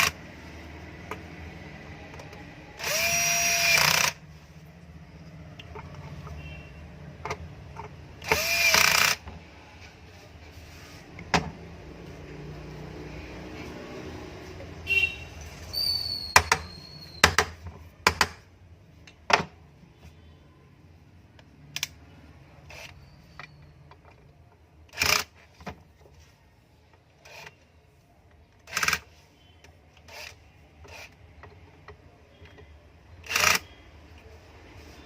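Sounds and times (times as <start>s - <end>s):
screwdriver scraping and clicking: 30.0s - 32.6s, 33.2s - 33.7s.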